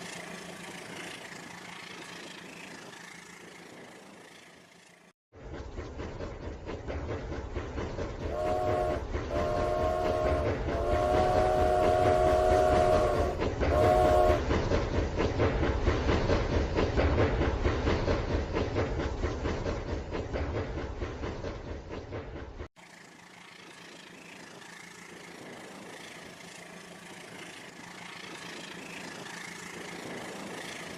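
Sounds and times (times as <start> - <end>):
toy train horn: 8.3 - 14.4.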